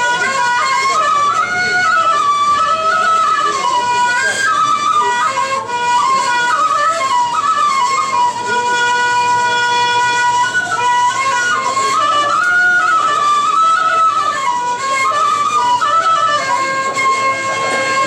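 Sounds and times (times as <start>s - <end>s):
flute playing traditional melody: 0.0s - 18.0s.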